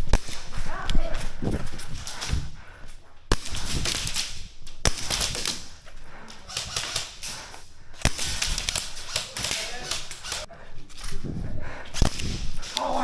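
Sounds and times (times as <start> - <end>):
airsoft gun shots: 0.0 - 0.7, 3.3 - 5.8, 6.4 - 7.4, 8.0 - 10.5, 12.0 - 13.0
rustling movement: 0.0 - 13.0.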